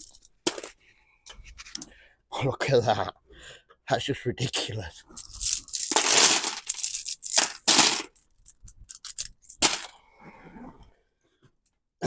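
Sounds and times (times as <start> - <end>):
coins clattering and clinking: 0.0 - 0.8, 5.2 - 9.9.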